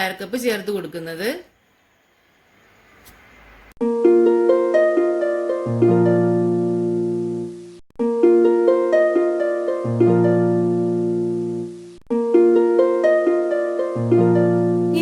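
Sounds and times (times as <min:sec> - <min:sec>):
plucked harp-like music: 0:03.9 - 0:07.1, 0:08.1 - 0:11.4, 0:12.2 - 0:15.0.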